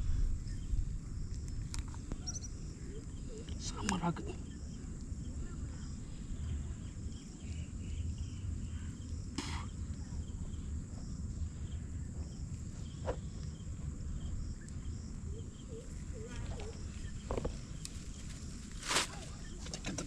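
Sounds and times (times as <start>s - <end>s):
low rumble: 0.0s - 3.3s
insects chirping: 0.0s - 20.0s.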